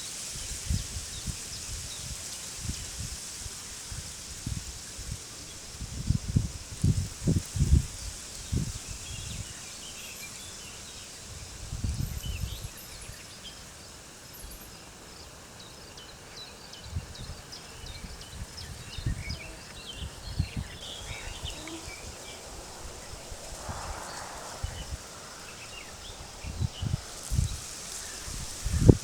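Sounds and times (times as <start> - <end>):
steady high hiss: 0.0 - 29.0
small birds chirping: 4.4 - 29.0
wind gusts rumbling: 18.0 - 29.0.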